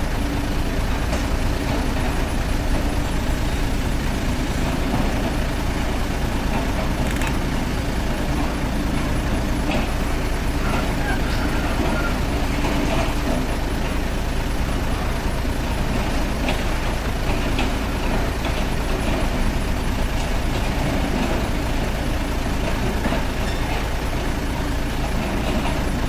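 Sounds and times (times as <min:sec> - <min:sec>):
toy excavator motor rumbling: 0:01.0 - 0:15.2
small clicks: 0:07.0 - 0:07.4.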